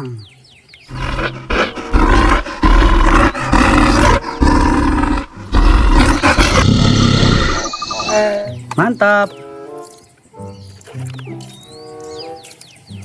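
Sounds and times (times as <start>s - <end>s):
bear roaring: 0.9s - 8.5s.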